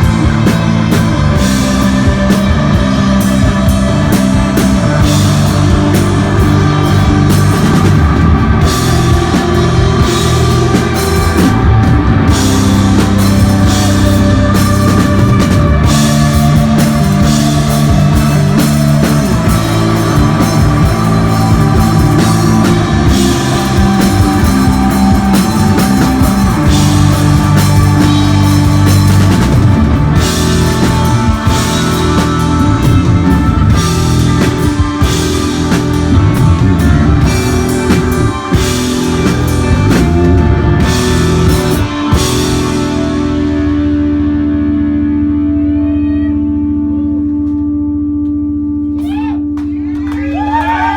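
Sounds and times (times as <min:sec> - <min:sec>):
driving drum kit: 0:00.0 - 0:44.9, 0:49.0 - 0:50.9
electric guitar: 0:00.0 - 0:50.9.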